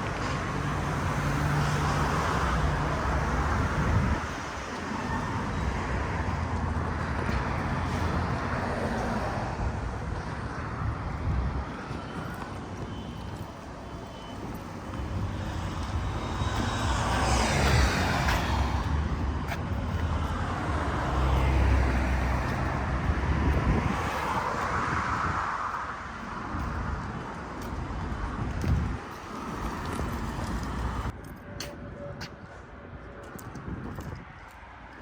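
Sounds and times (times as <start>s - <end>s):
cars driving past: 14.9s - 27.4s.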